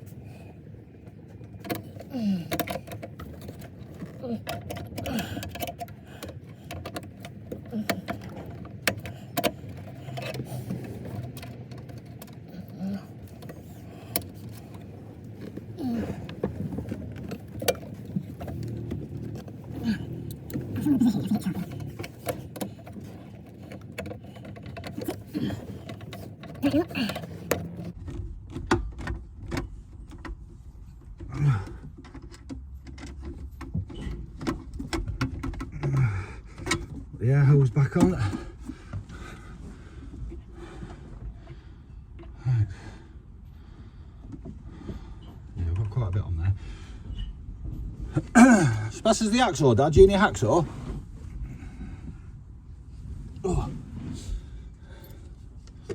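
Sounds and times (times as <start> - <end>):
tools clicking and knocking: 1.0 - 37.2.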